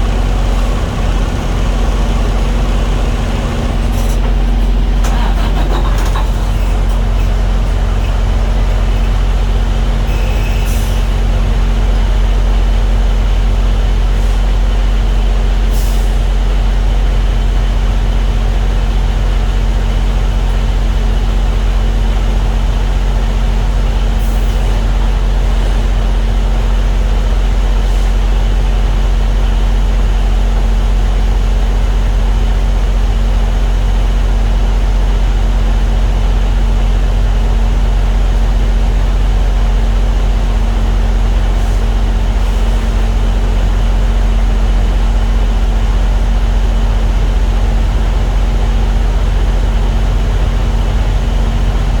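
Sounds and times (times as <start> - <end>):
diesel engine idling: 0.0 - 52.0
brief rattle: 2.8 - 9.4.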